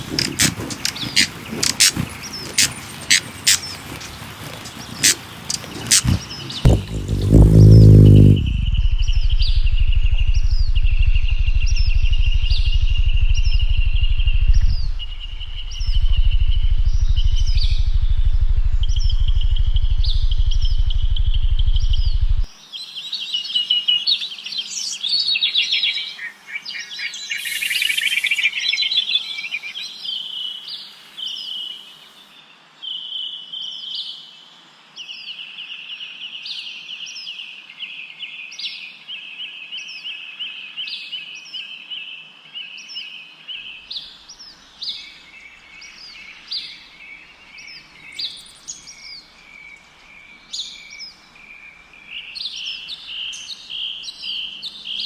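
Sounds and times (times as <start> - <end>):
songbirds trilling: 0.0 - 8.4, 9.1 - 32.3, 42.8 - 55.0
birds chirping: 0.0 - 23.2, 25.7 - 32.3.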